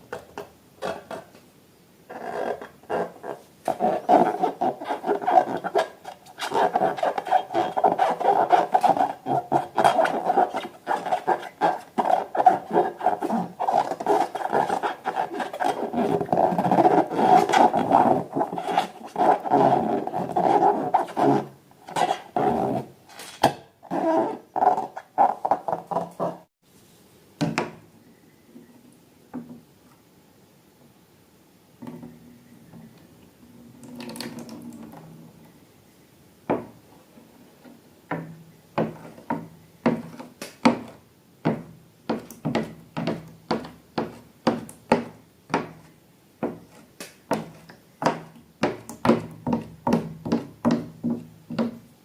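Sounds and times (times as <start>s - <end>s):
slime rubbing and crackling: 2.6s - 22.4s.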